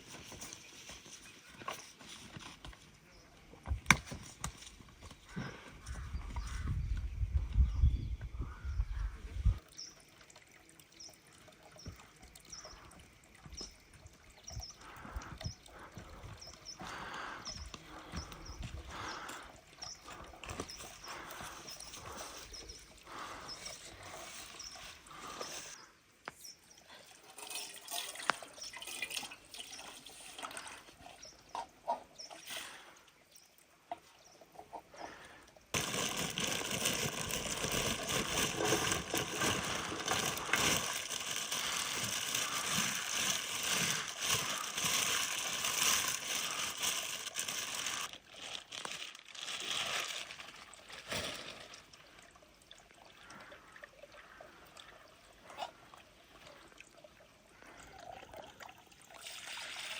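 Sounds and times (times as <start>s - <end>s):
running water rushing: 35.1s - 48.2s
rustling: 35.8s - 51.9s.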